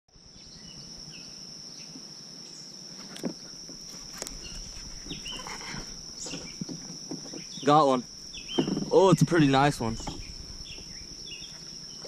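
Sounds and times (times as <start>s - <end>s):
insects droning: 0.1s - 12.0s.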